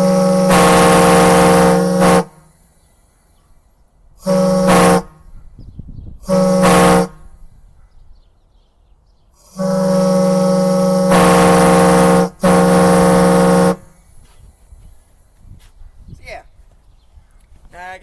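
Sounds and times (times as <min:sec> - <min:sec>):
air horn blasts: 0:00.0 - 0:02.7, 0:04.2 - 0:05.4, 0:06.2 - 0:07.5, 0:09.5 - 0:14.1.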